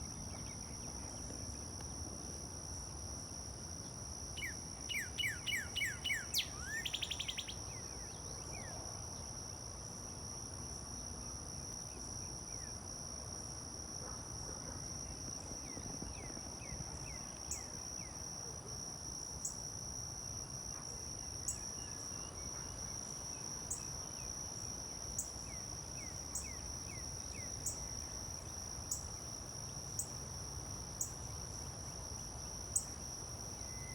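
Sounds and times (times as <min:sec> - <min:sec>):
high insect drone: 0:00.0 - 0:14.0, 0:14.6 - 0:33.9
bird singing whistles: 0:04.4 - 0:07.6.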